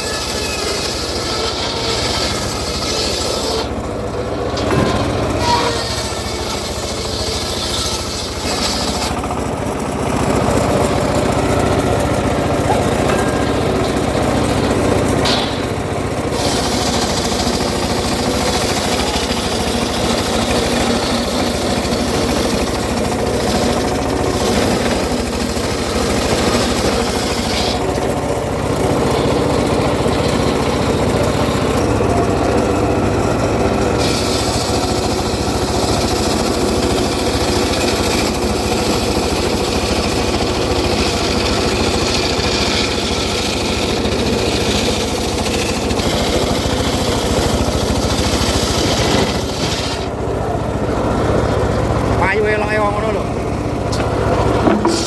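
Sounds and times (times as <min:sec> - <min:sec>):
engine saw cutting wood: 0:00.0 - 0:55.0.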